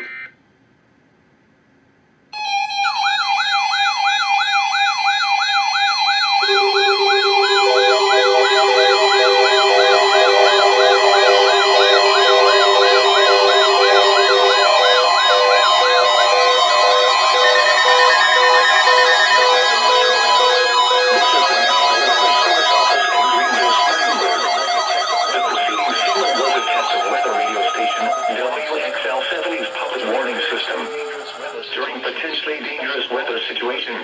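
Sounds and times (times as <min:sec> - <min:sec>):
fast warbling siren: 0:02.4 - 0:32.2
steady alarm tone: 0:02.4 - 0:32.8
pulsed beep: 0:06.2 - 0:32.4
second steady tone: 0:06.5 - 0:31.6.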